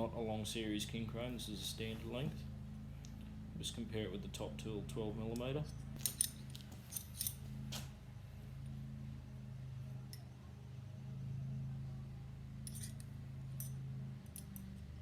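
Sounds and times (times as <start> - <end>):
steady low hum: 0.0 - 15.0
metal spanners clinking together: 5.4 - 7.4, 12.7 - 13.7.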